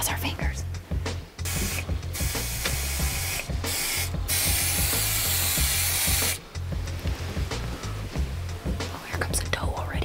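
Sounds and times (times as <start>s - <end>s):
background music: 0.0s - 10.0s
loud even hiss: 1.4s - 6.6s.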